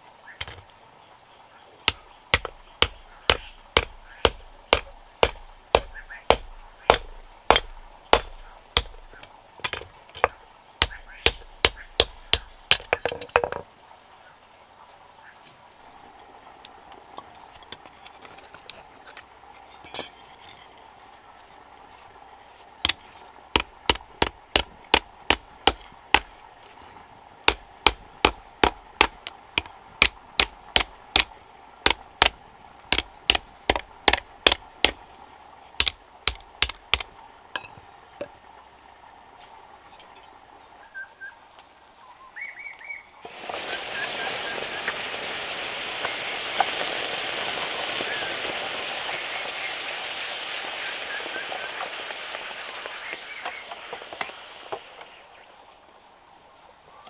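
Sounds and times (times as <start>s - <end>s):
hammer striking metal: 1.9s - 13.1s
steady hiss: 43.1s - 56.2s.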